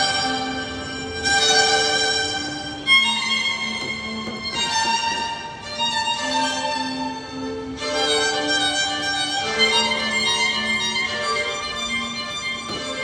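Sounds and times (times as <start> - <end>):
slow violin melody: 0.0 - 13.0.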